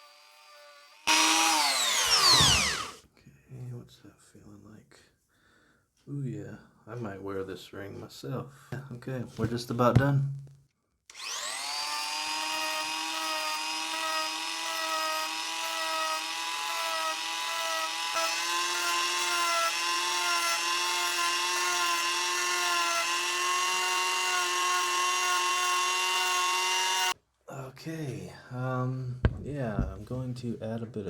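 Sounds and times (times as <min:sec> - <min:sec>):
rotary tool sanding wood: 0:00.0 - 0:03.0, 0:11.1 - 0:27.2.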